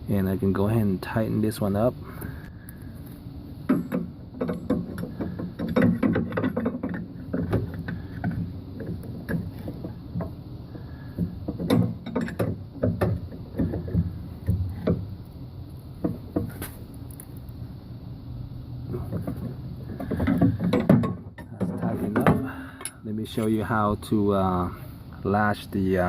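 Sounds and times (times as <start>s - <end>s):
hand tool metal clicks and knocks: 3.7s - 10.4s, 11.2s - 15.1s, 19.1s - 23.0s.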